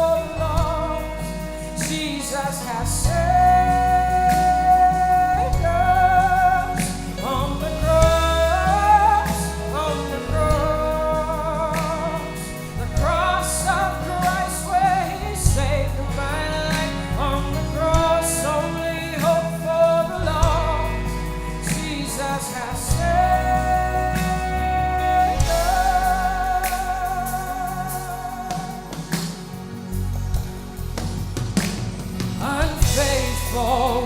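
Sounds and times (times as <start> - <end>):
low bass notes: 0.0 - 34.0.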